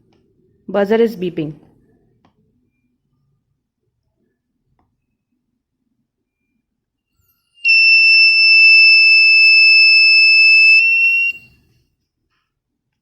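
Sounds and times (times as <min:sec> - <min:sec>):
high-pitched alarm buzzer: 0:07.7 - 0:11.5.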